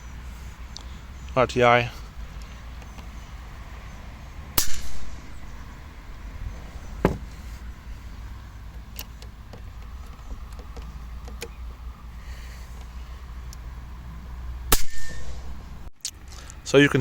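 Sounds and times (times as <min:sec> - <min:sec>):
air rifle dry-fire crack: 0:04.6 - 0:05.2, 0:14.7 - 0:15.4.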